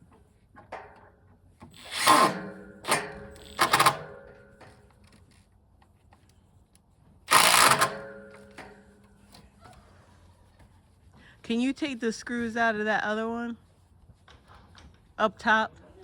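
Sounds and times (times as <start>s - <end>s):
power drill driving screws: 1.7s - 4.1s, 7.3s - 8.2s.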